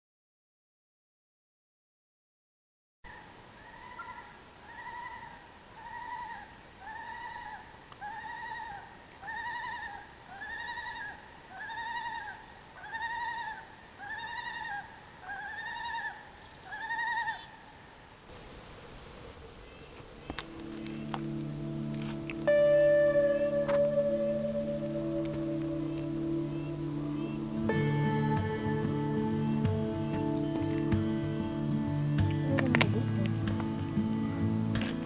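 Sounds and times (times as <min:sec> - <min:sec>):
high buzzy sound: 0:20.4 - 0:35.0.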